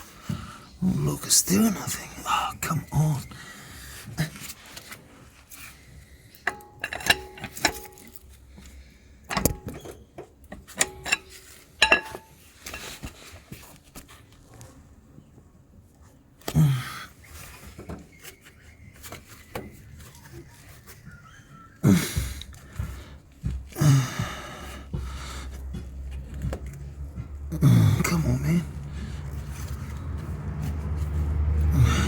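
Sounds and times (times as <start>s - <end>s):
metal tools clinking on exhaust: 6.3s - 13.2s
person exhaling heavily: 23.8s - 25.6s, 31.7s - 32.0s.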